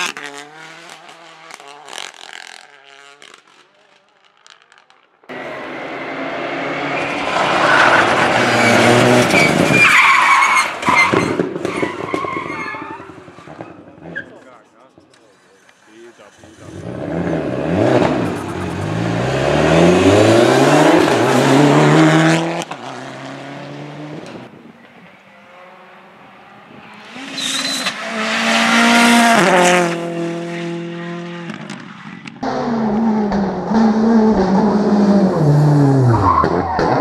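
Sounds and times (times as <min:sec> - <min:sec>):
car passing at high revs: 0:00.0 - 0:03.7, 0:05.3 - 0:09.8, 0:16.3 - 0:37.0
rally car engine at full throttle: 0:00.0 - 0:04.7, 0:05.3 - 0:37.0.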